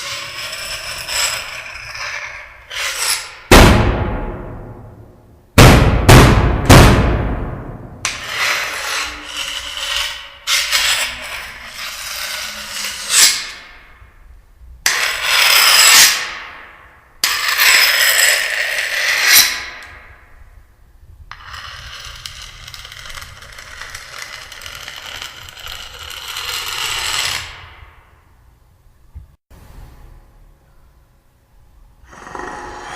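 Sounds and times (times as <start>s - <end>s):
harsh scraping and rattling: 0.0s - 3.5s, 8.0s - 14.0s, 21.3s - 28.1s.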